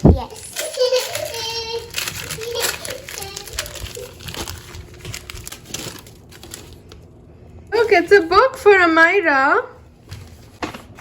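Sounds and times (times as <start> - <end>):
gift wrapping crinkling and tearing: 0.0 - 7.1.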